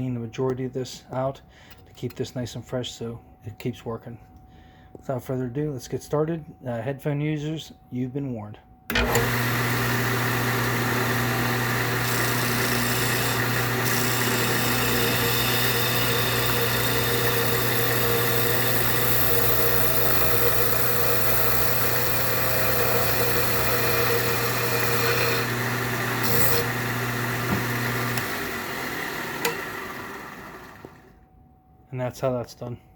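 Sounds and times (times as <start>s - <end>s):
electric disc sander running: 8.9s - 31.1s.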